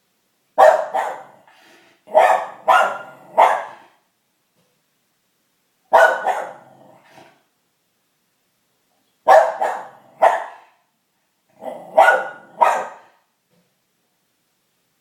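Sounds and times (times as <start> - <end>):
dog barking: 0.6 - 1.5, 2.1 - 4.0, 5.9 - 6.8, 9.2 - 10.8, 11.6 - 13.3.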